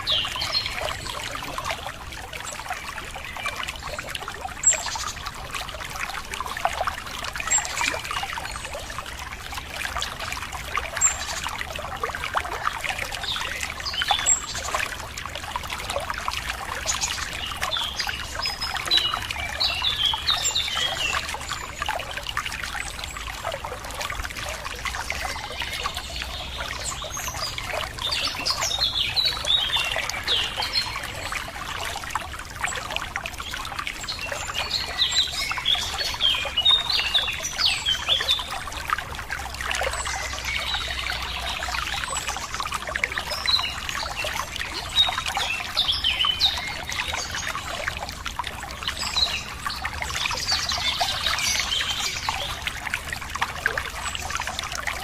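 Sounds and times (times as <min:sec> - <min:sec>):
water trickling: 0:00.0 - 0:55.0
small birds chirping: 0:39.7 - 0:48.0.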